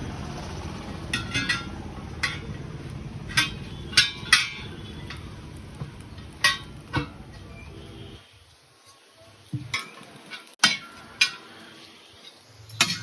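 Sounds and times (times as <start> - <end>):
low steady rumble: 0.0 - 7.4
tools clinking on metal rim: 1.1 - 2.6, 3.2 - 5.4.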